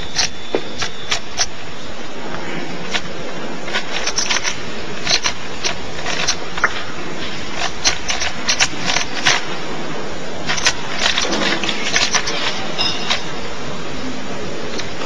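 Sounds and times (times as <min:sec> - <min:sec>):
sharp clicks and clacks: 0:00.0 - 0:01.8, 0:02.8 - 0:09.7, 0:10.4 - 0:13.4
room noise hiss: 0:00.0 - 0:15.0.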